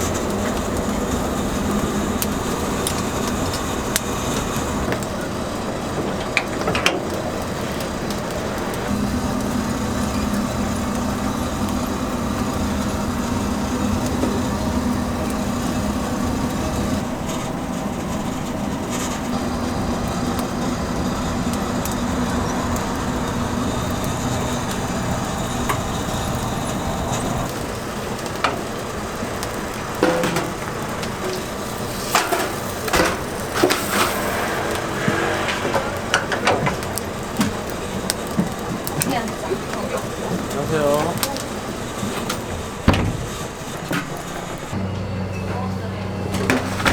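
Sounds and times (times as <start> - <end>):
faint sizzle: 0.0 - 42.4
motor or fan humming: 0.0 - 43.8, 44.4 - 46.9.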